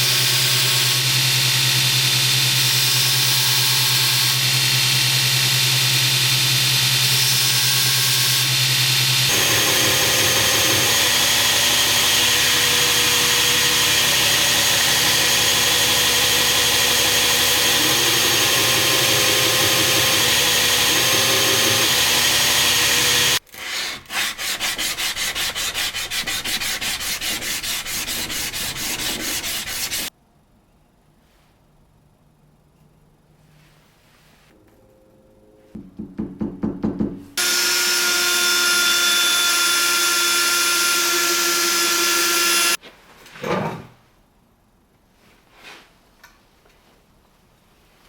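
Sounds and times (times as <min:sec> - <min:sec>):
power tool grinding: 0:00.0 - 0:30.1, 0:37.4 - 0:42.8
rapid rubbing strokes: 0:24.4 - 0:30.1.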